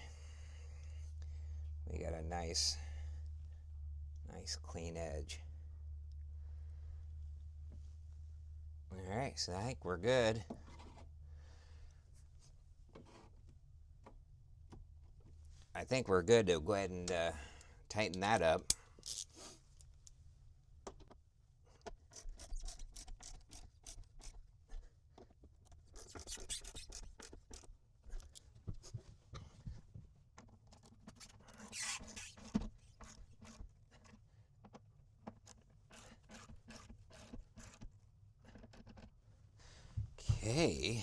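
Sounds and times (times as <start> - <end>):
parts rubbing and scraping: 19.0 - 19.6, 25.7 - 28.4, 30.7 - 34.3, 35.4 - 38.9.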